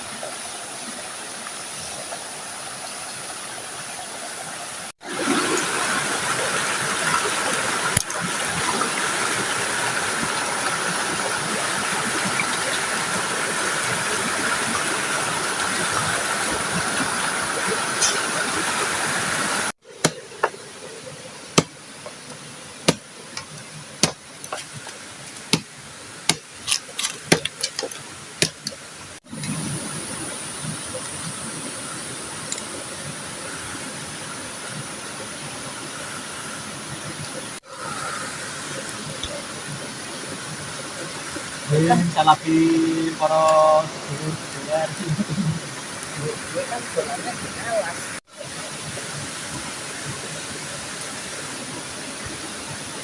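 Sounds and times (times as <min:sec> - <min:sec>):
river flowing: 0:00.0 - 0:53.0.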